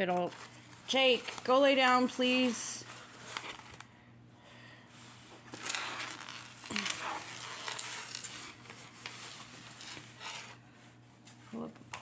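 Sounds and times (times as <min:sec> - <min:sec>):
plastic film crinkling: 0:00.0 - 0:03.9, 0:05.1 - 0:10.6.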